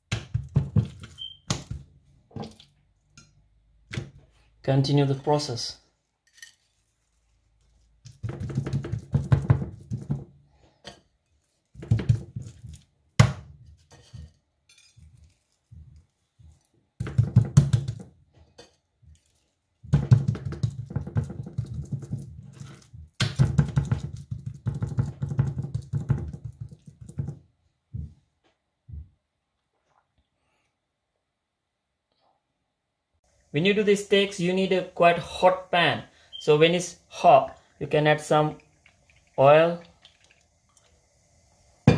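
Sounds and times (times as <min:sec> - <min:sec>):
rubbing and patting meat: 0:00.0 - 0:03.2, 0:06.6 - 0:14.3, 0:15.0 - 0:28.3.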